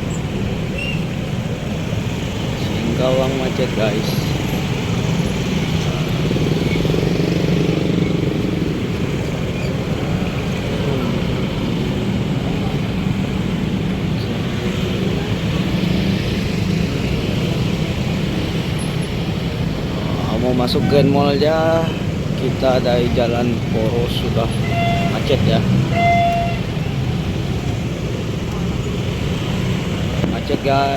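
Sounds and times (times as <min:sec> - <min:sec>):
car engines at low speed: 0:00.0 - 0:30.9
motorcycle engines: 0:00.0 - 0:30.9.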